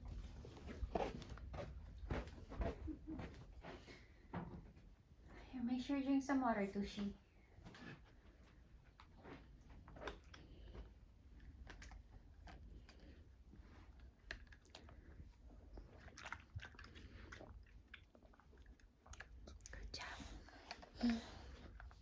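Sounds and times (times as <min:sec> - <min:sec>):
child drinking water: 0:09.9 - 0:22.0.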